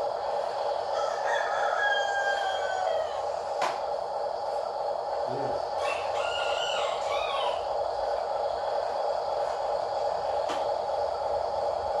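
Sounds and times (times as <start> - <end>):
steady drone: 0.0 - 12.0
rooster crowing: 0.8 - 3.6, 5.7 - 7.8.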